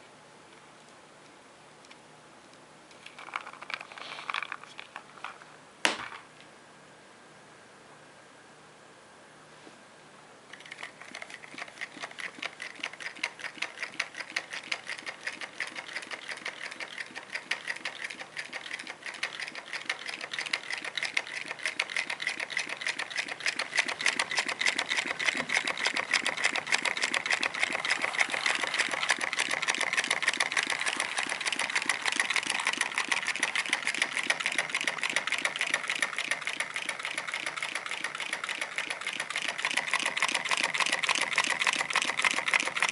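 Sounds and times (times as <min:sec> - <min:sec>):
model engine linkage clattering: 0:10.5 - 0:42.9.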